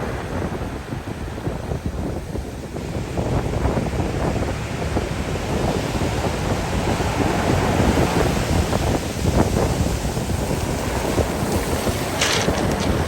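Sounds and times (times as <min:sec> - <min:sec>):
wind buffeting microphone: 0:00.0 - 0:13.0
surf breaking on shore: 0:07.0 - 0:13.0.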